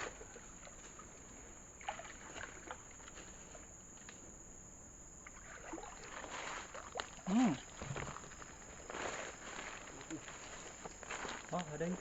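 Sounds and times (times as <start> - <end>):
small water splashes: 1.8 - 3.2, 5.2 - 8.5
water sloshing: 1.8 - 3.2, 5.2 - 11.5.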